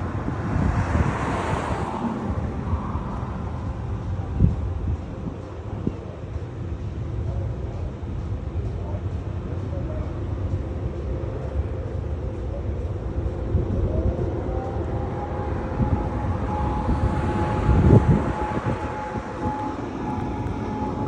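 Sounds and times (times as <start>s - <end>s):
vehicle passing close by: 0.0s - 4.5s, 13.4s - 21.0s
low industrial rumble: 0.0s - 21.0s.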